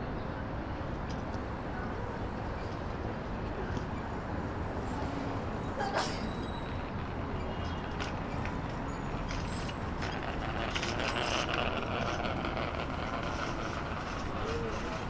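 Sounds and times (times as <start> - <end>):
traffic rumble: 0.0 - 15.0.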